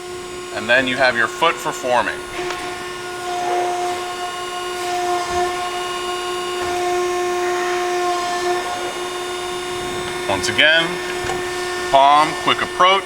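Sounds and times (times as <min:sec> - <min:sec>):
hydraulic pump whining: 0:00.0 - 0:13.0.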